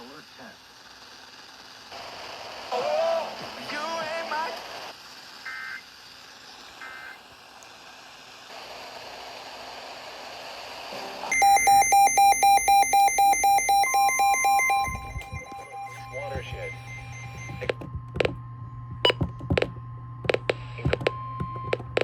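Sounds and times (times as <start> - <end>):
electronic data chirps: 11.3 - 17.8
rapid alert beeping: 11.3 - 17.8
steady warning tone: 11.3 - 22.0.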